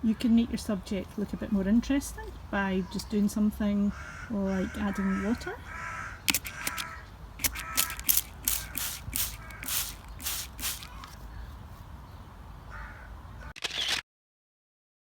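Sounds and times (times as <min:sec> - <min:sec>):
crow cawing: 0:03.9 - 0:10.0, 0:12.7 - 0:13.5
spray bottle hissing squirts: 0:06.3 - 0:11.1.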